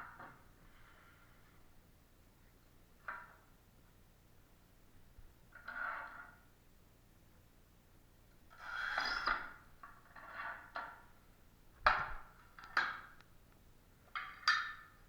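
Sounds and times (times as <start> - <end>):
hand tools scraping: 8.6 - 9.4.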